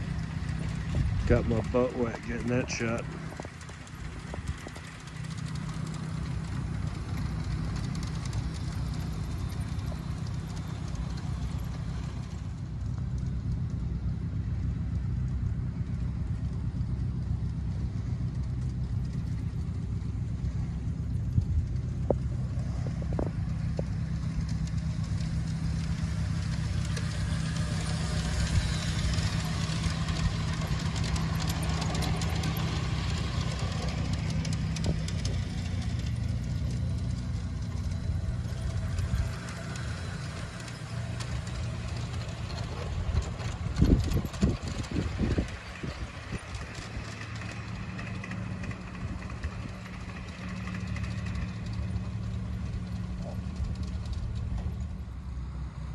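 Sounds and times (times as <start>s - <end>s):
model train motor hum: 23.6s - 55.8s.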